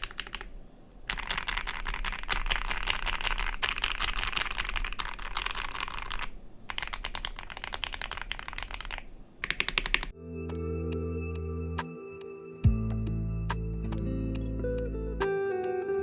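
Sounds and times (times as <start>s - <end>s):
mechanical keyboard typing: 0.0s - 10.1s.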